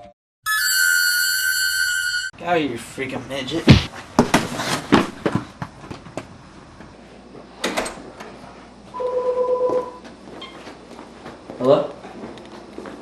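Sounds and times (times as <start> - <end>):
sharp thump: 3.7 - 4.5
telephone ringing: 9.0 - 10.0.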